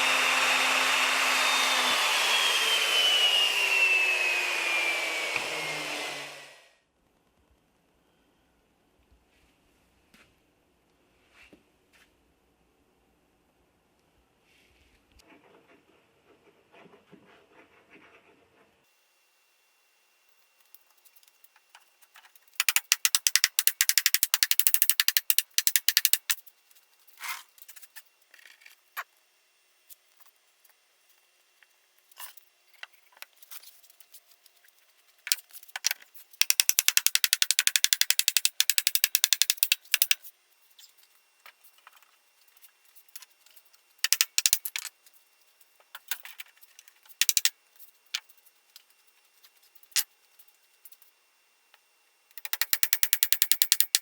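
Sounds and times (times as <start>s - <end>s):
hand tool scraping wood: 0.0s - 6.5s.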